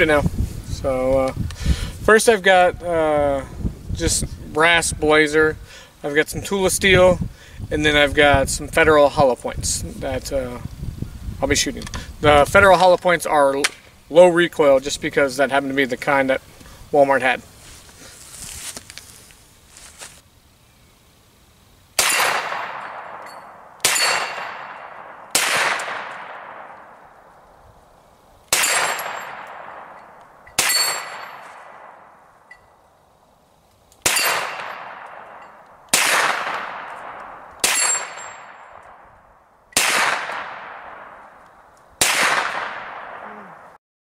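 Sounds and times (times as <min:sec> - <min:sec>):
gunshots with echo: 0:22.0 - 0:23.2, 0:23.8 - 0:27.0, 0:28.5 - 0:30.0, 0:34.0 - 0:39.0, 0:39.8 - 0:41.2, 0:42.0 - 0:43.3.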